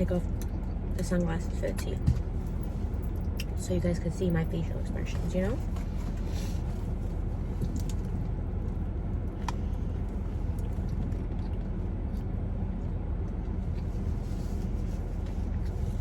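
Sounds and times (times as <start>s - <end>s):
air conditioner rumbling: 0.0s - 16.0s.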